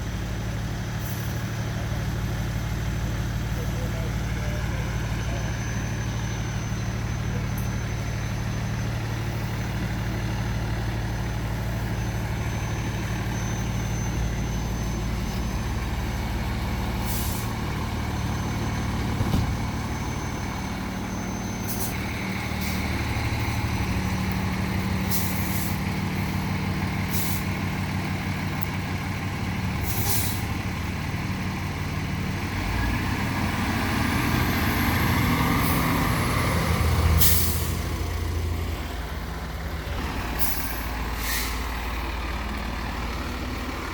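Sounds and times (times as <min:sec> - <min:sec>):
diesel engine idling: 0:00.0 - 0:43.9
air brakes hissing: 0:04.6 - 0:26.4, 0:27.0 - 0:27.6, 0:29.7 - 0:30.6, 0:35.5 - 0:38.4, 0:40.2 - 0:42.1.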